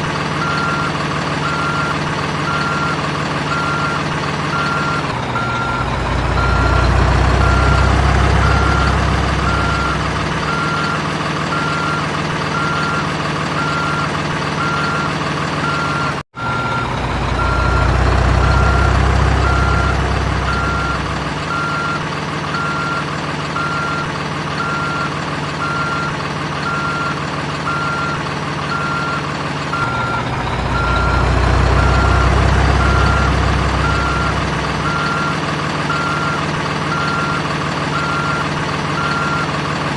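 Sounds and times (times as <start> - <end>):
warning beep: 0.4 - 13.0, 14.6 - 23.0, 29.8 - 37.4.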